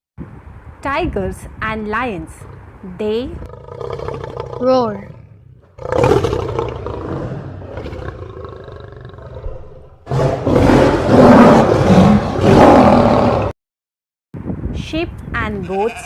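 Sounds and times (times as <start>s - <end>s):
big cat roaring: 3.4s - 13.5s.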